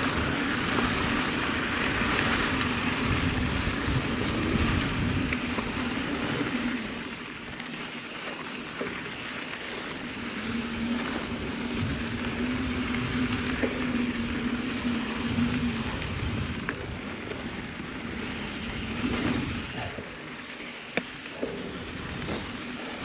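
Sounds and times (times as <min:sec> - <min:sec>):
wind on microphone: 0:00.0 - 0:07.2, 0:10.0 - 0:20.2
steady low hum: 0:00.0 - 0:23.0.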